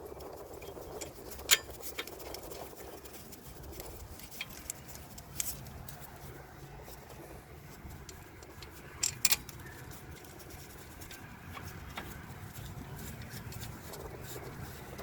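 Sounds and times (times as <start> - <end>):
metallic clicks of bolts: 8.0 - 10.3.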